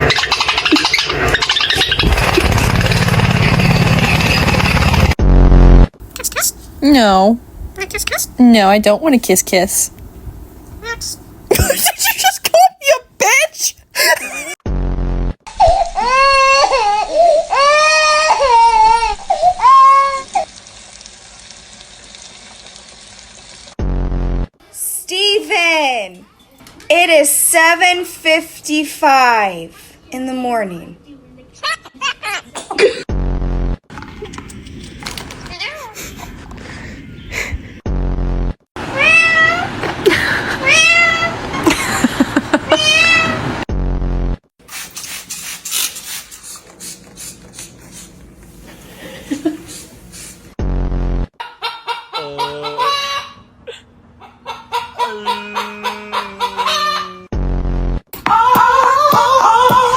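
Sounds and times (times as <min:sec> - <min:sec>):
parrot mimicking baby crying: 0:10.8 - 0:11.2, 0:15.6 - 0:20.4, 0:38.8 - 0:39.8, 0:40.6 - 0:41.4, 0:42.7 - 0:43.5, 0:51.4 - 0:53.4, 0:54.5 - 0:57.3
cat meowing: 0:38.9 - 0:39.7, 0:40.6 - 0:41.3, 0:42.7 - 0:43.4.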